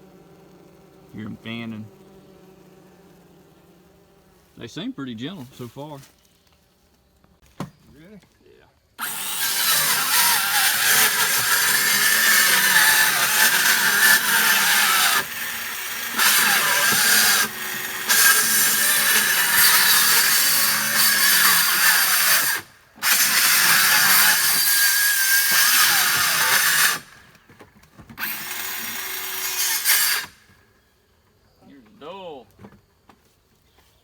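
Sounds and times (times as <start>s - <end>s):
circular saw cutting wood: 0.0s - 4.1s, 9.0s - 27.2s, 28.2s - 30.5s.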